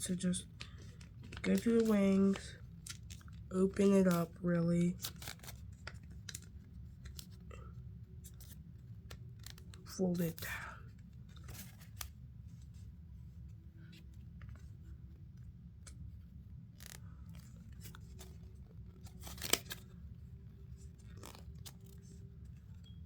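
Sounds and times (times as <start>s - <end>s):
faint low hum: 0.0s - 23.0s
paper being folded: 0.1s - 7.5s, 8.2s - 12.8s, 16.8s - 23.0s.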